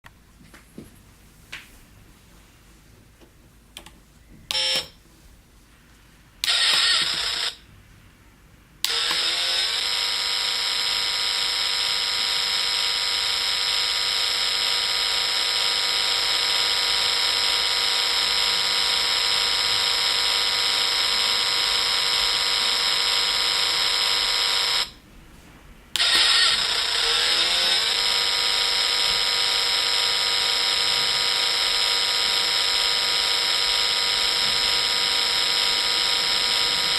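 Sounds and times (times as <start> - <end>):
buzzy electronic engine tone: 26.0 - 36.9.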